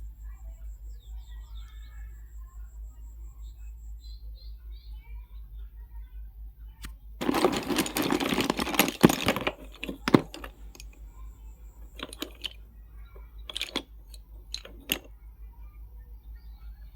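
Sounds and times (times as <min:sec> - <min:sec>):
pencils and box crackling: 0:07.2 - 0:12.6, 0:13.2 - 0:15.1.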